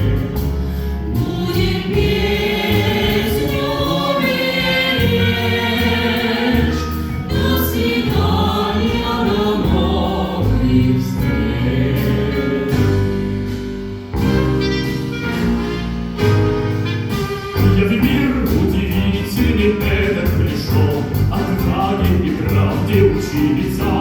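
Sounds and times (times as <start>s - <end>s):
live ensemble music with choir: 0.0s - 24.0s.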